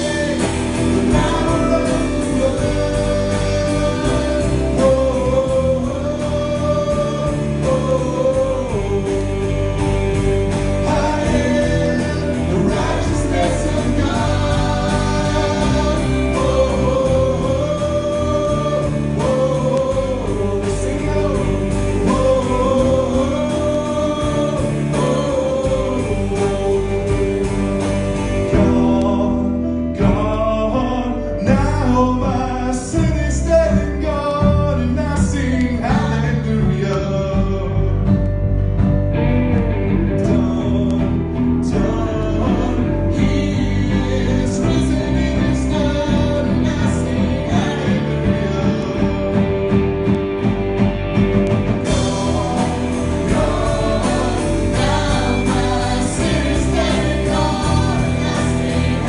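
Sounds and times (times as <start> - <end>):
gospel singing voices: 0.0 - 59.0
instrumental accompaniment: 0.0 - 59.0.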